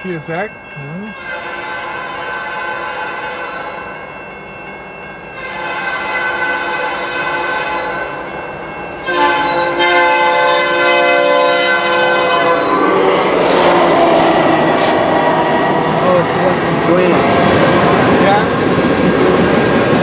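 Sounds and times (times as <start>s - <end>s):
train air horn blasts: 1.1s - 3.8s, 5.4s - 8.2s, 9.0s - 16.2s.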